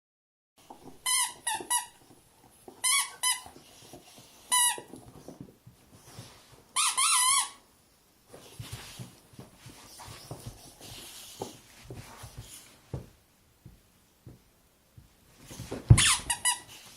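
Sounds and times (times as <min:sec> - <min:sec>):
rubber squeaky toy squeaking: 0:01.0 - 0:02.0, 0:02.8 - 0:03.5, 0:04.5 - 0:04.9, 0:06.8 - 0:07.6, 0:16.0 - 0:16.7.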